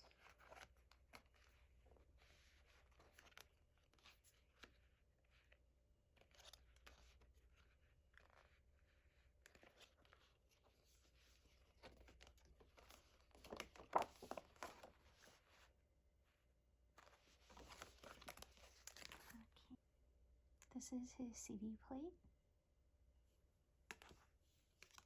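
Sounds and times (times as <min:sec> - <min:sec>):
packaging rustling: 0:11.9 - 0:15.4.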